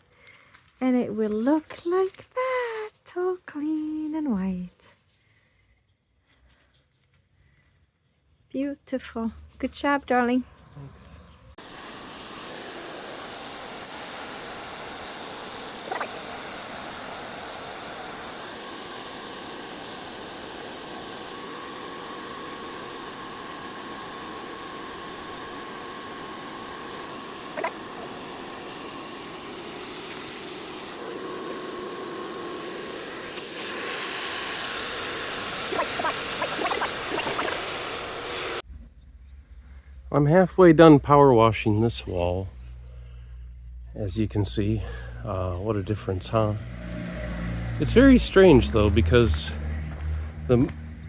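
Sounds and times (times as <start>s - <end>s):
pressure washer spraying wall: 11.6s - 38.6s, 47.0s - 50.9s.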